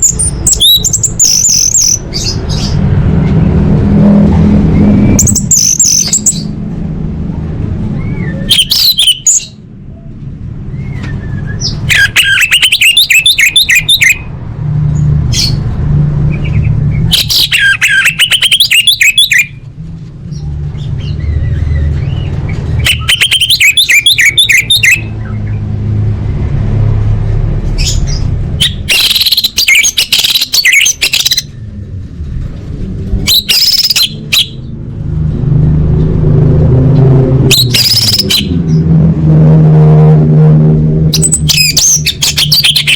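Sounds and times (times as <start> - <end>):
bird singing: 0.0 - 3.5, 4.7 - 6.6, 7.9 - 14.3, 16.2 - 19.6, 20.3 - 25.7, 27.8 - 31.8, 33.2 - 34.8, 37.5 - 38.9, 41.1 - 42.9.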